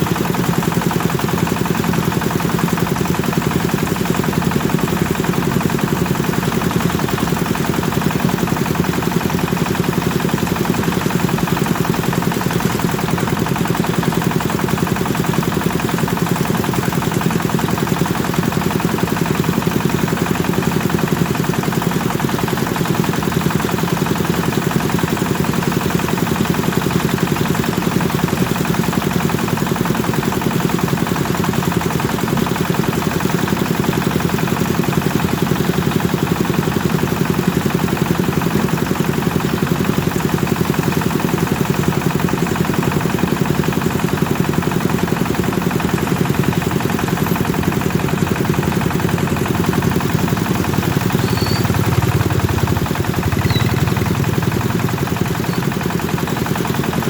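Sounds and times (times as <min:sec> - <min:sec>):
threshing machine engine running: 0:00.0 - 0:57.0.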